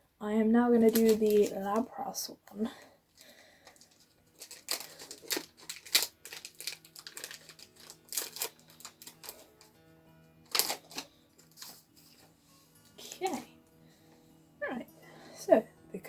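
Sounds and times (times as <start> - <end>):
quiet background music: 0.0 - 16.0
foil wrapper tearing and crinkling: 0.8 - 1.9, 3.2 - 9.7, 10.5 - 11.9.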